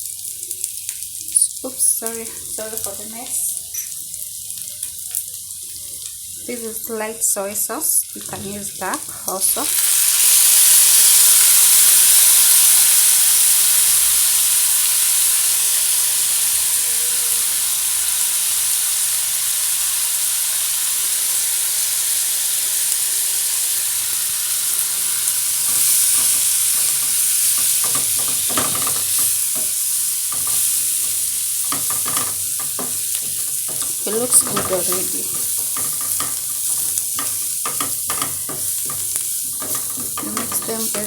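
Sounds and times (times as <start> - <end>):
food sizzling in hot oil: 0.0 - 41.0
spoon scraping and knocking pot: 25.6 - 41.0.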